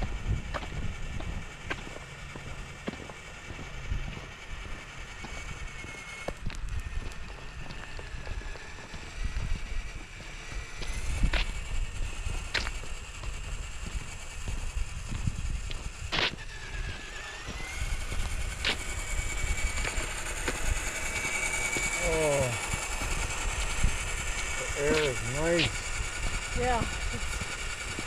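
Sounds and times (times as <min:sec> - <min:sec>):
toy truck electric motor whining: 0:00.0 - 0:28.0.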